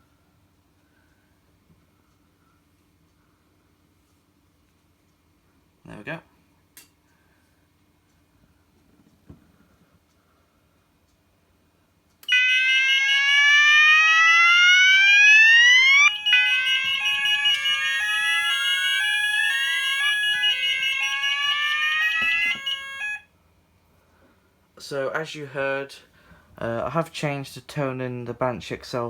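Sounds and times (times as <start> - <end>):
fire alarm rising sweeps: 12.3 - 23.2
steady high tone: 12.3 - 23.2.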